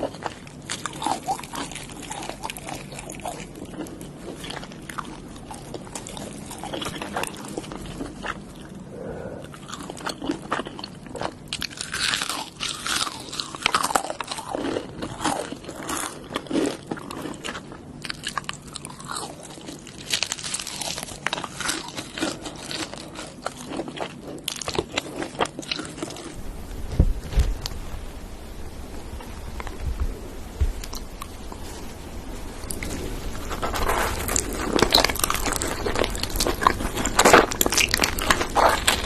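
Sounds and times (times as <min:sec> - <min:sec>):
crunchy chewing: 0:00.0 - 0:27.8, 0:32.6 - 0:39.0
low thud: 0:26.4 - 0:30.8.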